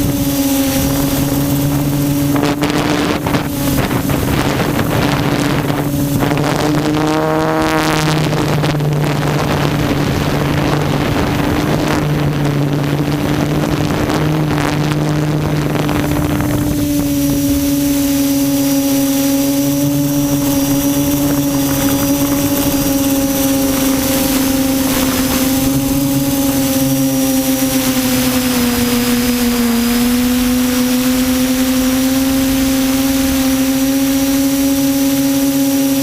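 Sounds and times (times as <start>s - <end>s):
drone motors and propellers whining: 0.0s - 36.0s
rushing noise: 0.0s - 36.0s.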